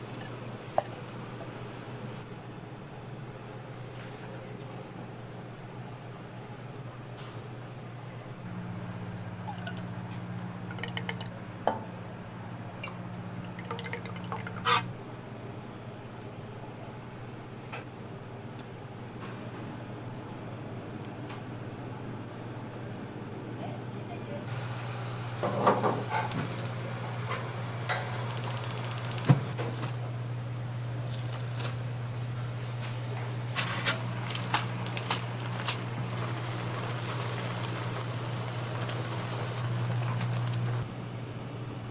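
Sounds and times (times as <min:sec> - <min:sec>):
low machine hum: 0:00.0 - 0:41.9.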